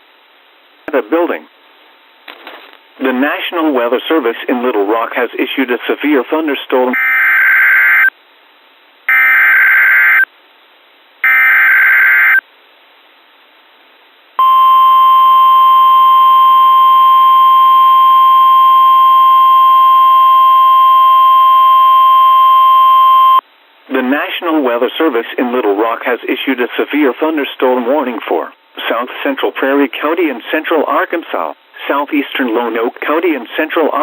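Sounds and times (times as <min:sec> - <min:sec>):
steady warning alarm tone: 0:07.0 - 0:08.1, 0:09.1 - 0:10.3, 0:11.2 - 0:12.4, 0:14.4 - 0:23.4.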